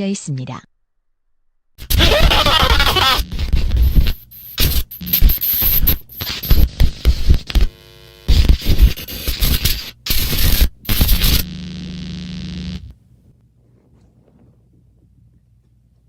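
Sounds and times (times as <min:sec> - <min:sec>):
crackling static: 0:01.8 - 0:13.0
buzzing hum with hiss: 0:01.8 - 0:13.4.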